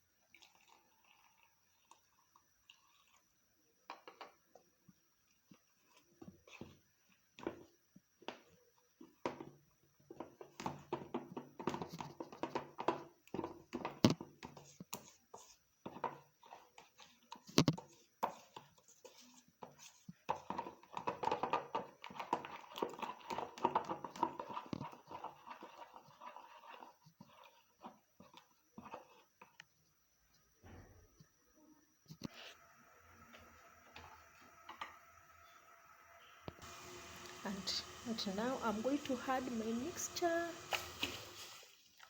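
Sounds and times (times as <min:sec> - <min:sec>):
spoon scraping and knocking bowl: 0:10.1 - 0:29.6.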